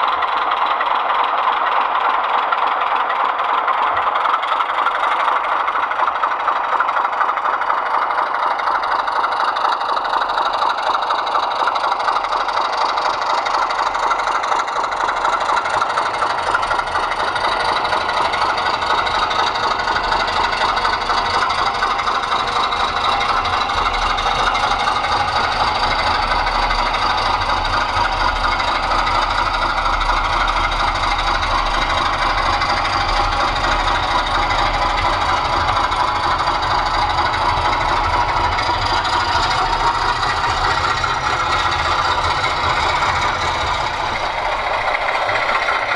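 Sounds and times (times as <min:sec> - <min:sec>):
diesel engine running: 0:12.9 - 0:45.9.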